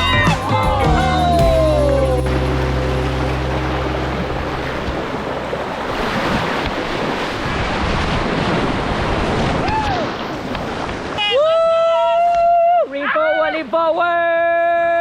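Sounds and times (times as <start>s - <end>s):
background music: 0.0s - 5.8s
water rushing over rocks: 0.0s - 11.5s.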